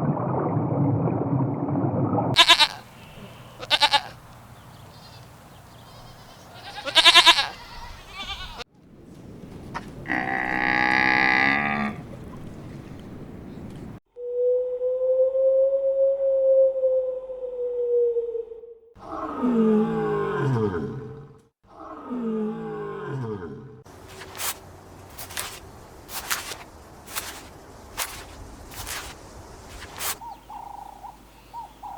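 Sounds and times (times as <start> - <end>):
farm animals bleating: 2.4 - 4.3, 4.9 - 8.6, 10.1 - 12.0.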